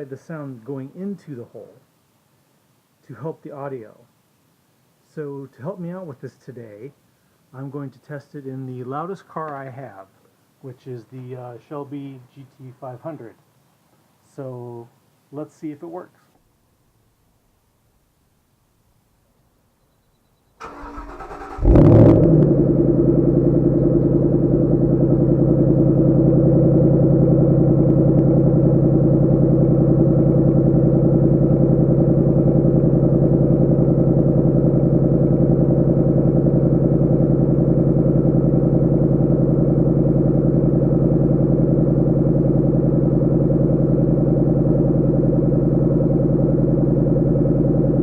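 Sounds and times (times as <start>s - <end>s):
starter motor cranking: 20.6s - 22.1s
car engine revving and idling: 20.7s - 48.0s.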